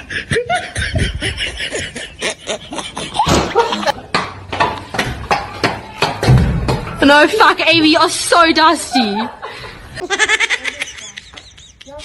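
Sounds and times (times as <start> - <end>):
person laughing: 0.0 - 4.0.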